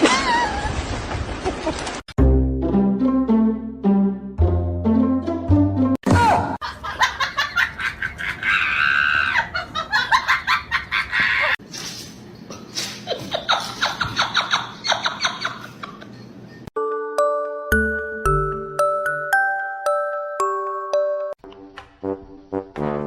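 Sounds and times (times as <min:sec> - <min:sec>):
people laughing hard: 0:06.6 - 0:11.6, 0:13.0 - 0:16.2.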